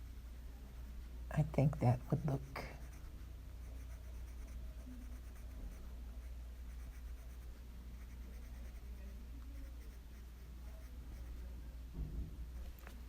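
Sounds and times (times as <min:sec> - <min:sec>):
steady low hum: 0:00.0 - 0:13.0
pen scratching on paper: 0:02.1 - 0:11.5.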